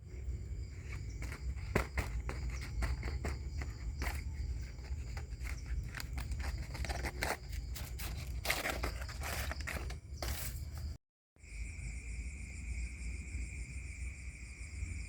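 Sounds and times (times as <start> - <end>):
rustling and crunching steps: 0.7 - 11.0.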